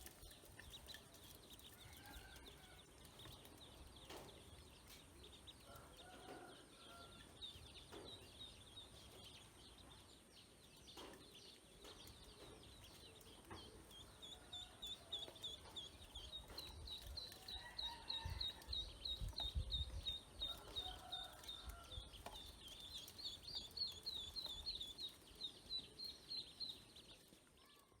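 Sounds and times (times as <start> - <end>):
ducklings peeping: 7.2 - 27.6.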